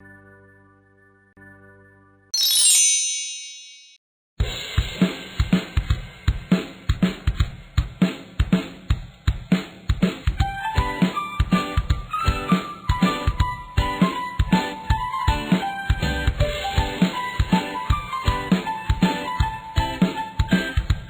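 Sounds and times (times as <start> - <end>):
sparkling chime sweep: 2.4 - 4.0
upbeat drum-kit groove: 4.4 - 21.0.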